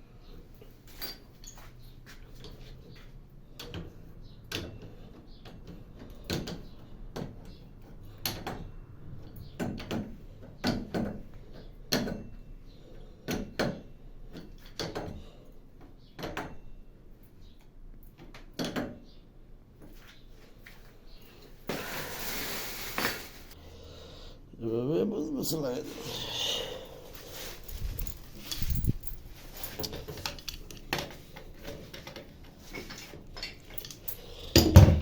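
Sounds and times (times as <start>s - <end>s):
hard parts and tools knocking: 32.9s - 35.0s.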